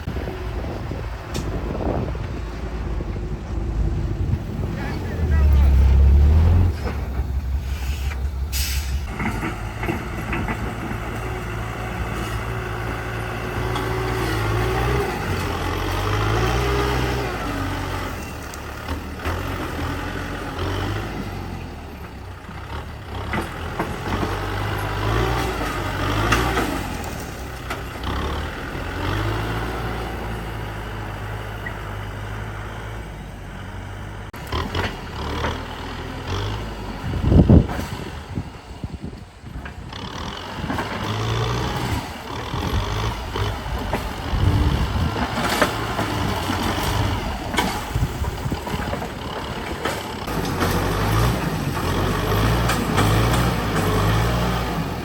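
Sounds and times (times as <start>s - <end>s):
diesel machinery engines: 0.0s - 55.0s
short hiss: 7.6s - 9.1s.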